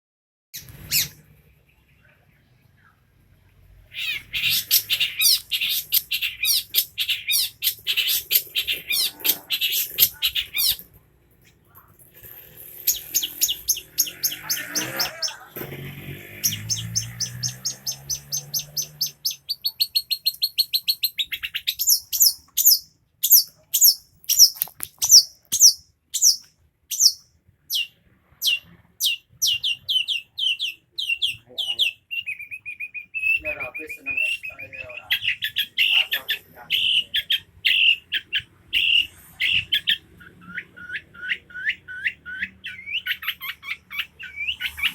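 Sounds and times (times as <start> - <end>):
shrike singing: 12.8 - 27.9.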